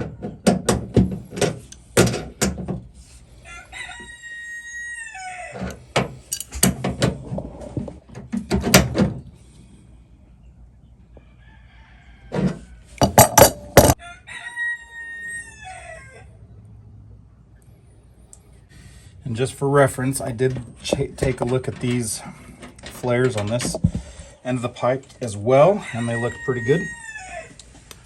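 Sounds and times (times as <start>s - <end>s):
rooster crowing: 3.4s - 5.8s, 11.2s - 16.4s, 25.8s - 27.6s
wrench clicking and knocking: 6.3s - 6.8s, 13.0s - 14.0s.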